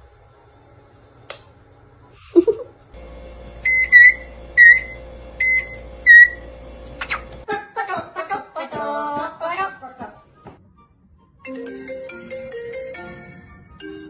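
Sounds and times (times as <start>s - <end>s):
low steady hum: 2.0s - 7.5s
parrot whistling beeps: 3.6s - 6.4s.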